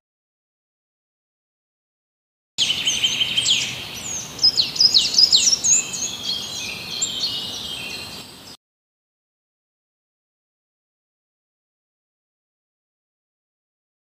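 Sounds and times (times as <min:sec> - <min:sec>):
wild birds chirping and trilling: 0:02.6 - 0:08.6.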